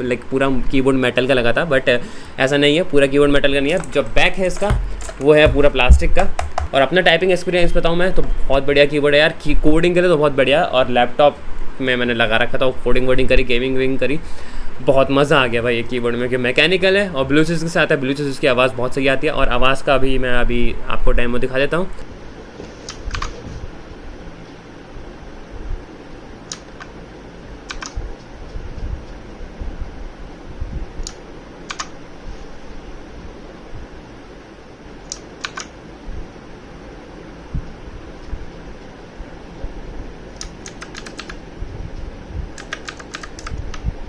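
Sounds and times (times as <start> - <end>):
mechanical keyboard typing: 3.6 - 7.0, 27.7 - 28.0, 31.7 - 31.9, 35.1 - 35.7, 40.4 - 41.4, 42.6 - 43.8.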